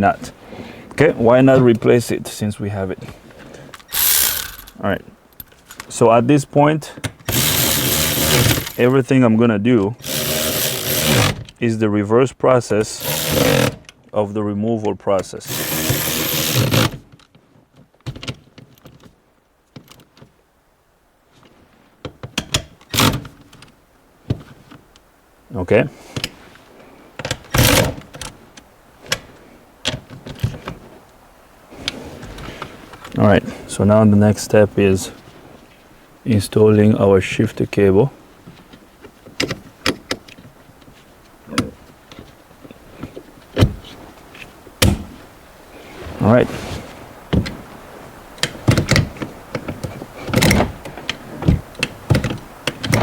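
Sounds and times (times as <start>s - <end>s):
shifter cable clicks and knocks: 48.4s - 53.0s.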